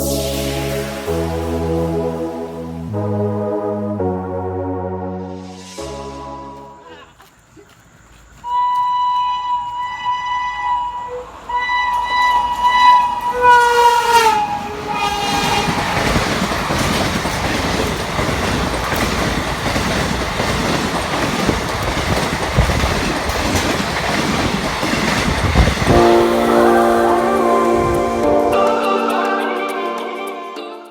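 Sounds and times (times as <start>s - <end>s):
music: 0.0s - 6.9s, 25.9s - 30.9s
locomotive horn blasts: 8.5s - 16.0s
train coaches rumbling past: 8.5s - 29.1s
wheel clickety-clack: 15.0s - 26.0s.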